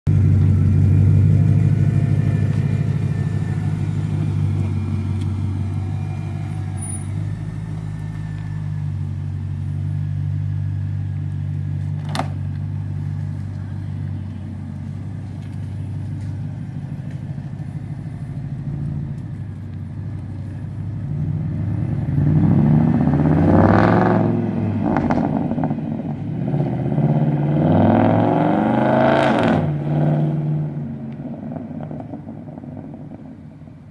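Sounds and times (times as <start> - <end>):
exhaust crackles: 0.1 - 27.2
car engine idling and revving: 0.1 - 33.9.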